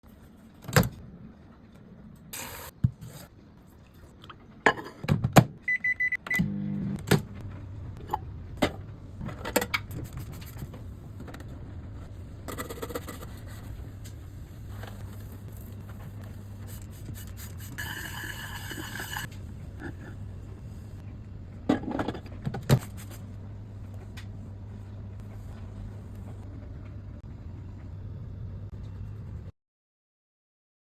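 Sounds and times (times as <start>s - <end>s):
dishes clattering: 4.7s - 5.1s
microwave oven humming: 5.6s - 17.0s, 17.6s - 29.5s
short keypad beep: 5.7s - 6.5s.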